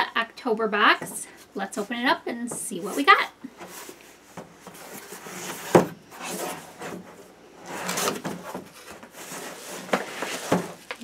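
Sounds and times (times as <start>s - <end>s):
cardboard scraping and rustling: 2.8s - 11.0s.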